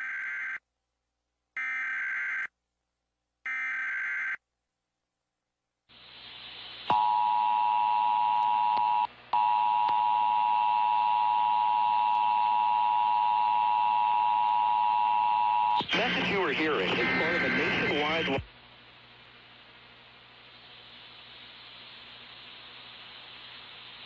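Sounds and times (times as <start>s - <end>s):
hiss: 5.9s - 6.9s, 19.2s - 24.0s.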